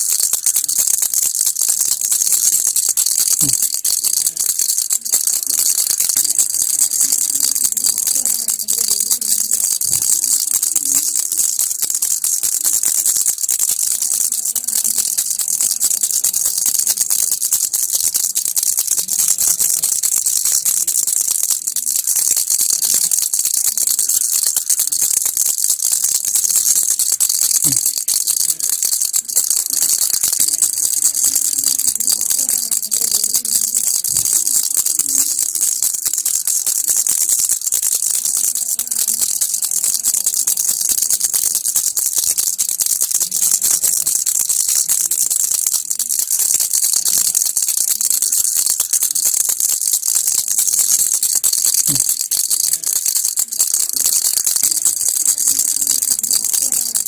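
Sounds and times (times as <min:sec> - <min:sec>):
baby rattle shaking: 0:00.0 - 0:57.0.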